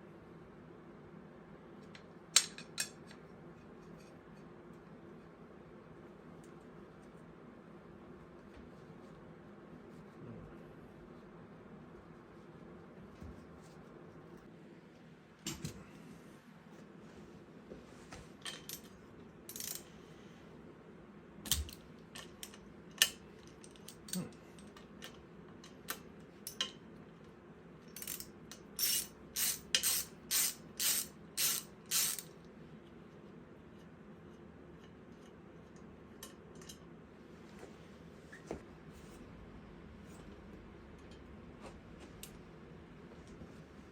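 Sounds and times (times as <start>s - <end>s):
metal tools clicking and clinking: 19.5s - 19.9s, 27.9s - 32.2s.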